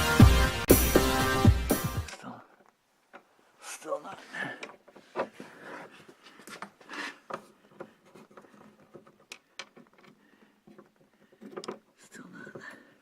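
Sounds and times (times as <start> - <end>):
small clicks taps and rustles: 4.6 - 13.0.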